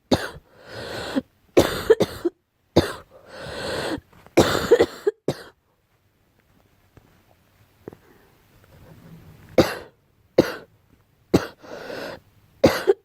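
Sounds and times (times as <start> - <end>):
girl coughing: 0.1 - 0.4, 1.6 - 3.1, 4.4 - 5.6, 9.6 - 10.7, 11.4 - 11.6, 12.6 - 13.0
drawn breath: 0.5 - 1.2, 3.1 - 4.0, 11.6 - 12.2.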